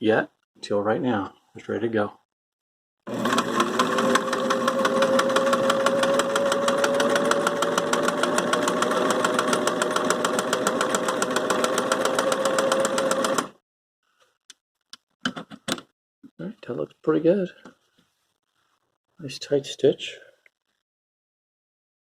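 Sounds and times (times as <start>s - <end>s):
sewing machine stitching: 3.1s - 13.6s.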